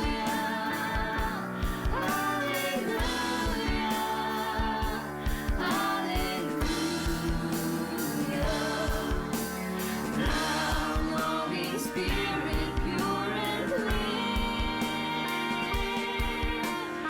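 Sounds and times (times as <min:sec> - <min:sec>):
person singing: 0:00.0 - 0:17.0
worship band music: 0:00.0 - 0:17.0.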